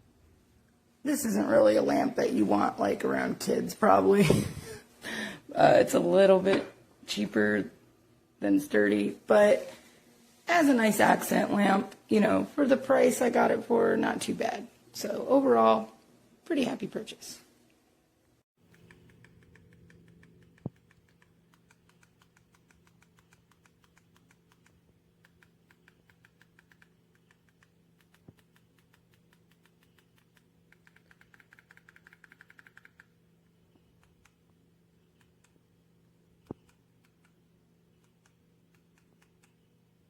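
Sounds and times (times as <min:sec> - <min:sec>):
faint rapid clicking: 0:18.6 - 0:35.7, 0:36.4 - 0:39.7.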